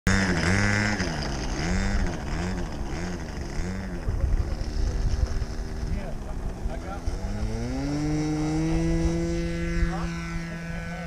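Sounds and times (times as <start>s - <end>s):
model airplane engine running: 0.1s - 11.0s.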